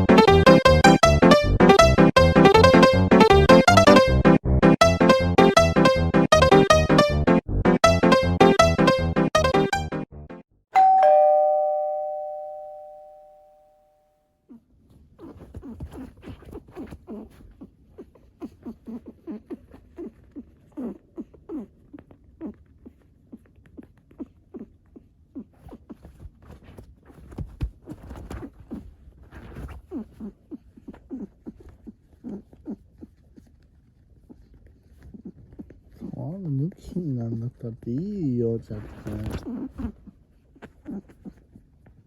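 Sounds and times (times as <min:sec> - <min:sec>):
two-note chime: 0:10.8 - 0:13.8.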